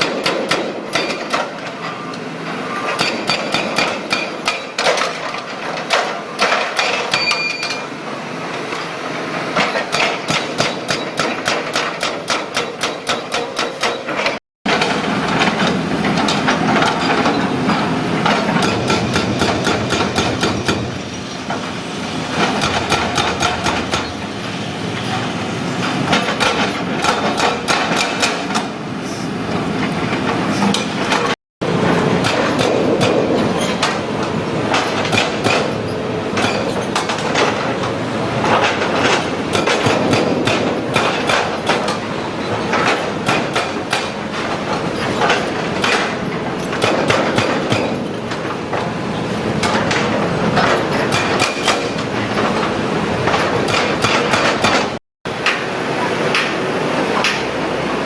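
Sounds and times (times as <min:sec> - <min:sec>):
hydraulic breaker hammering concrete: 0:00.0 - 0:01.6, 0:02.9 - 0:07.8, 0:09.6 - 0:20.9, 0:22.3 - 0:24.2, 0:26.1 - 0:28.7, 0:31.1 - 0:48.9, 0:49.6 - 0:56.6.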